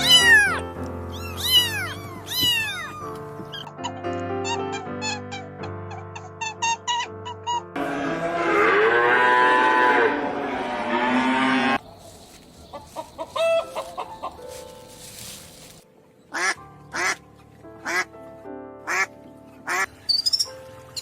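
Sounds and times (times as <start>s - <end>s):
cow mooing: 7.8s - 11.8s
duck quacks: 16.3s - 17.2s, 17.8s - 18.1s.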